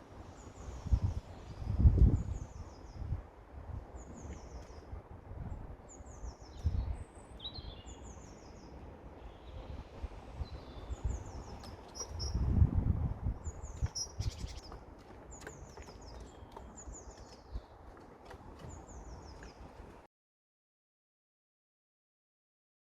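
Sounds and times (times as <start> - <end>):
songbird calling: 5.9 - 9.8, 10.4 - 12.4, 13.4 - 17.8.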